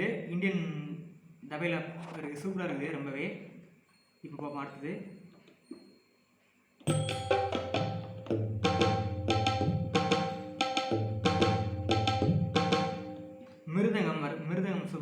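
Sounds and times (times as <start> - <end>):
keyboard drum rhythm: 6.9 - 13.3.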